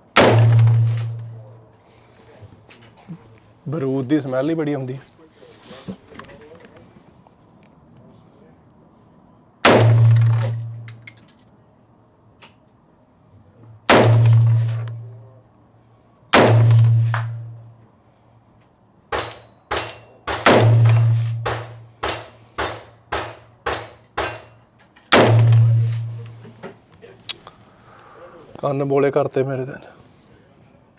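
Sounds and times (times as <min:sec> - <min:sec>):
loud rifle shots with echo: 0:00.2 - 0:01.4, 0:09.6 - 0:10.7, 0:13.9 - 0:14.9, 0:16.3 - 0:17.5, 0:19.2 - 0:24.5, 0:25.1 - 0:26.2
lighter rapid gunshots: 0:19.2 - 0:24.4.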